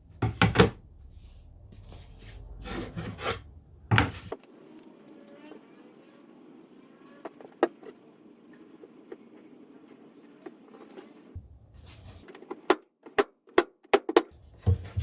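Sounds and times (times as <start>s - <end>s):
wooden pieces knocking and tapping: 12.3s - 14.3s.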